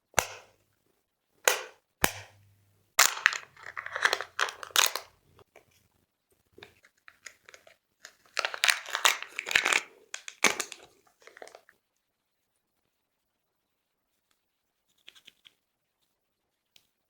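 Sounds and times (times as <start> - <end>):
plastic packaging crinkling and tearing: 3.0 - 5.1, 6.7 - 11.7.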